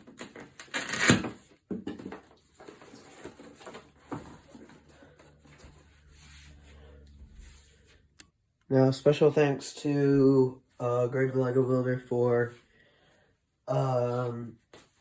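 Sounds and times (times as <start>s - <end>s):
cardboard rustling and scraping: 0.0s - 8.0s.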